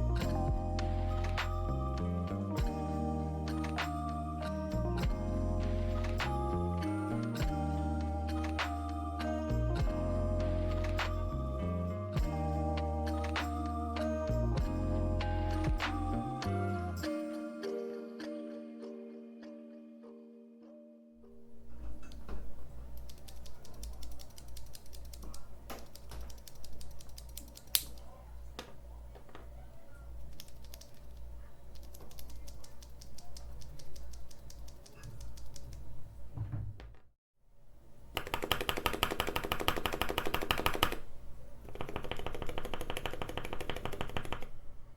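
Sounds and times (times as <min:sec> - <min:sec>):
mechanical keyboard typing: 0:23.0 - 0:28.0, 0:30.3 - 0:35.9, 0:38.2 - 0:41.0, 0:41.6 - 0:44.5.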